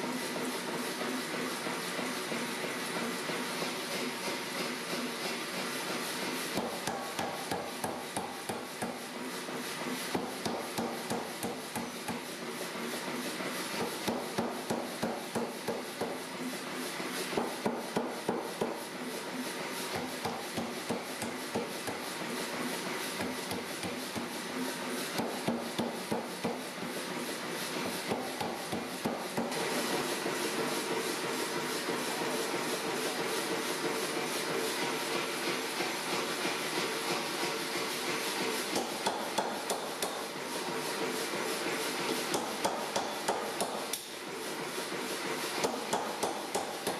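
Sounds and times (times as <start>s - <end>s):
hammer striking steel: 6.6s - 9.0s, 10.1s - 12.2s, 38.7s - 40.3s, 42.3s - 44.1s, 45.6s - 46.9s.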